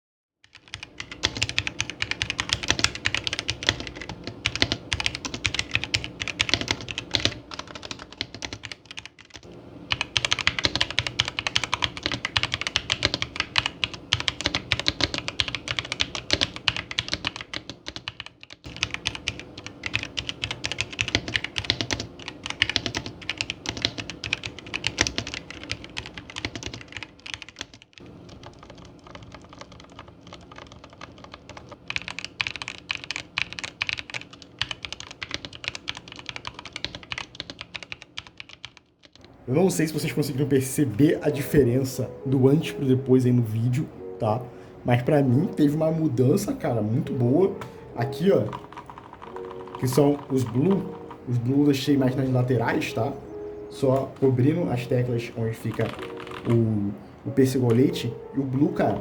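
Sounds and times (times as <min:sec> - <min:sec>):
mechanical keyboard typing: 0:00.4 - 0:39.3, 0:45.3 - 0:59.0.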